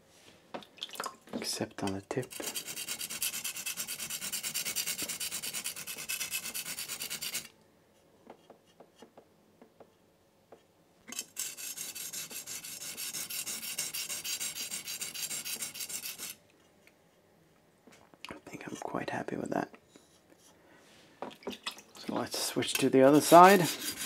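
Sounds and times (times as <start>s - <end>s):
knife grinding on whetstone: 2.3s - 7.5s, 11.1s - 16.4s, 22.7s - 24.0s.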